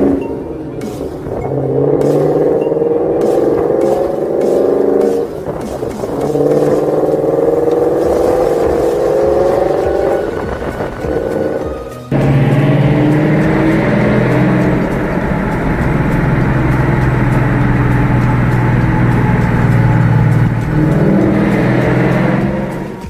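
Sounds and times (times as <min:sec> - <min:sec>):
vehicle engine running loud: 0:00.0 - 0:23.0.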